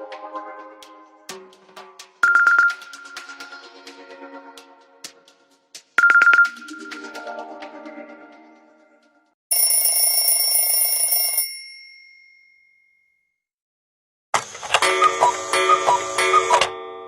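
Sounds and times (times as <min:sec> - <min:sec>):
phone alarm tones: 0:02.2 - 0:03.0, 0:06.0 - 0:06.8, 0:09.5 - 0:11.6, 0:14.7 - 0:16.8.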